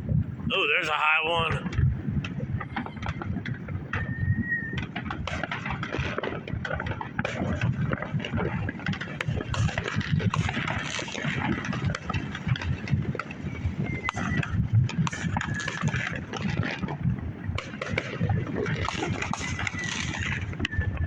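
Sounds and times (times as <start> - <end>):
fireworks popping and banging: 0.0 - 21.0
high firework whistle: 3.9 - 5.1, 13.3 - 16.2, 19.0 - 21.0.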